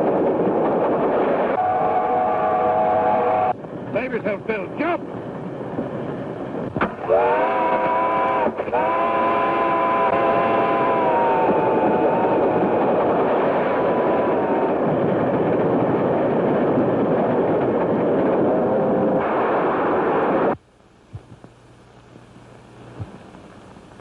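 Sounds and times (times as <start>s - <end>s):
steam train rushing roar: 0.0s - 20.6s
low hum: 0.0s - 24.0s
steam whistle: 1.6s - 3.6s, 7.0s - 12.7s.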